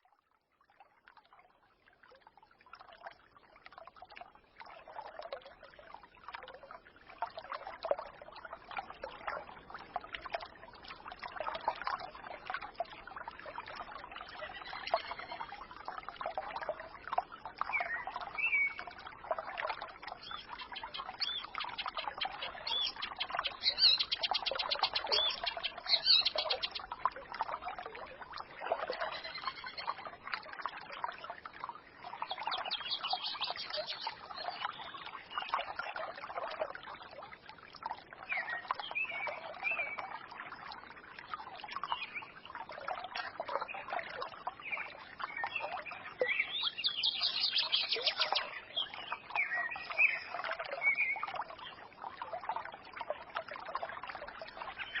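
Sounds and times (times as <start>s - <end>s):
forest stream gurgling: 0.0s - 55.0s
songbirds chirping: 16.6s - 19.0s, 19.8s - 30.2s, 32.0s - 36.0s, 44.6s - 51.8s.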